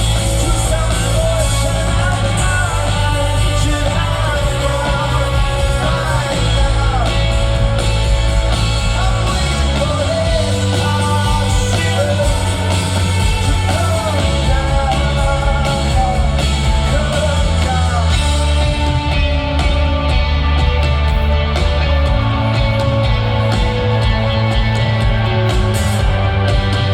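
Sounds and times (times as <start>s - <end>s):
man singing lead vocals: 0.0s - 26.2s
bass guitar: 0.0s - 26.9s
electric guitar: 0.0s - 26.9s.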